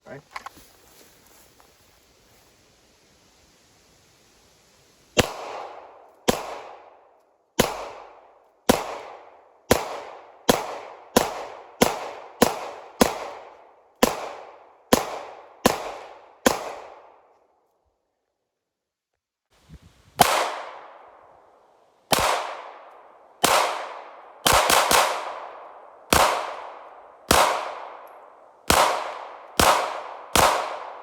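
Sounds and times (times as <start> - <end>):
rifle shots with echo: 5.2 - 7.0, 7.6 - 17.3, 20.2 - 21.3, 22.1 - 31.0.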